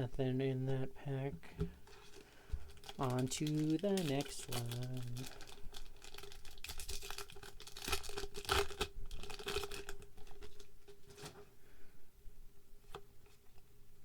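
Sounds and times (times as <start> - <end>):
foil pack ripping and rustling: 1.9 - 11.3.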